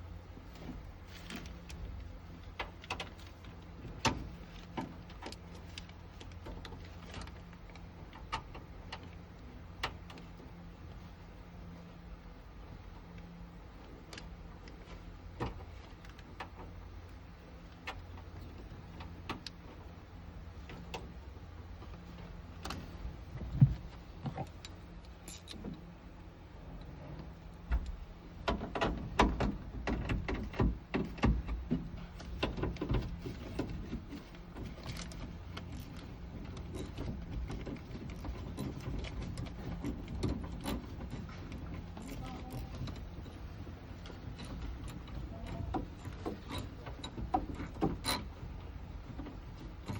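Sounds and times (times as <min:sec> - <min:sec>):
steady low hum: 0:00.0 - 0:49.9
clicks and rattles of tools: 0:24.2 - 0:25.8.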